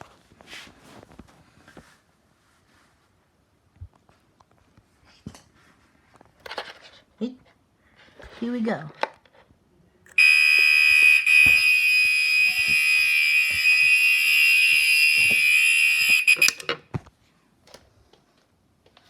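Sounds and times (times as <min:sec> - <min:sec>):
fire alarm horn steady tone: 0:10.2 - 0:16.7.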